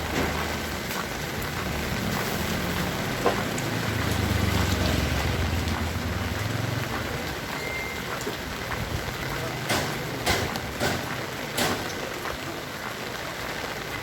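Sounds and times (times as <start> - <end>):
heavy rain falling: 0.0 - 14.0
raindrops ticking: 0.0 - 14.0
passing vehicle engine hum: 0.5 - 7.5.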